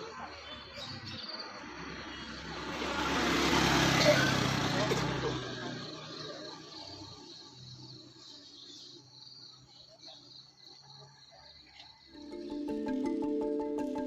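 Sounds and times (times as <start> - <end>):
marimba-like music: 12.1 - 14.0.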